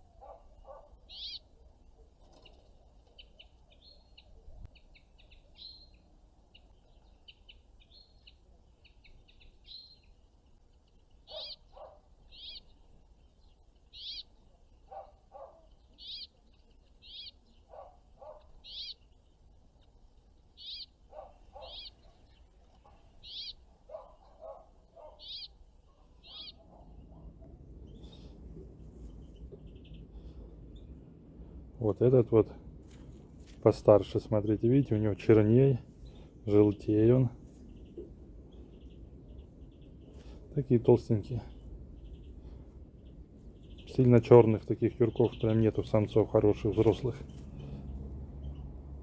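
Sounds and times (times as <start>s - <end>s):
small birds high-pitched calls: 0.0s - 48.8s
lower bird notes: 21.5s - 24.6s, 25.2s - 49.0s.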